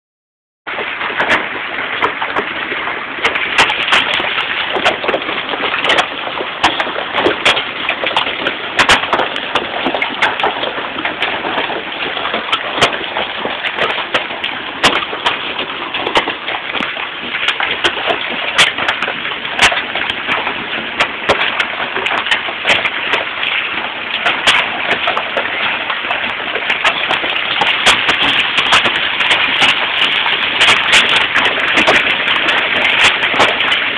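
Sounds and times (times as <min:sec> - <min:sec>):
hail pattering: 0:00.8 - 0:33.9
hailstones clicking on hard surface: 0:26.9 - 0:33.9.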